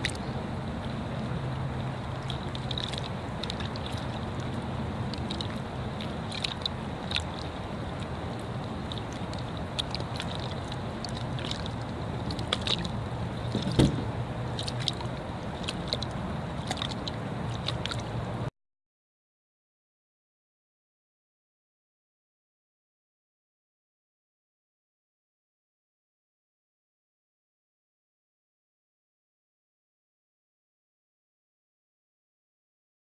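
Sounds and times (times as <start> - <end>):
engine running: 0.0 - 18.5
water sloshing: 0.0 - 18.5.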